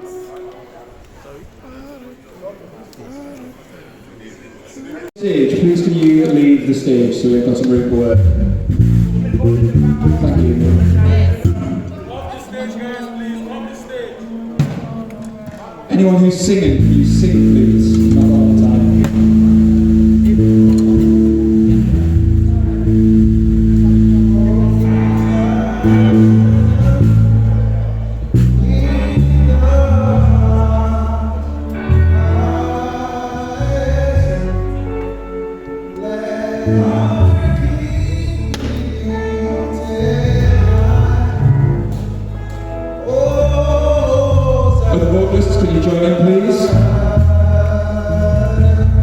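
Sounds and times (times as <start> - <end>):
band playing held chords: 6.9 - 12.0, 16.4 - 49.0
heavy low bass notes: 7.6 - 11.9, 16.4 - 35.5, 36.6 - 49.0
group of singers: 16.6 - 49.0.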